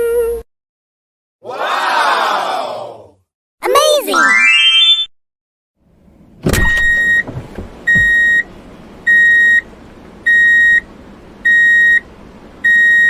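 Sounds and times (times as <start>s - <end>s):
thump: 6.4s - 8.2s
reversing alarm beeping: 6.6s - 8.5s, 9.1s - 9.6s, 10.3s - 10.8s, 11.4s - 12.0s, 12.6s - 13.0s.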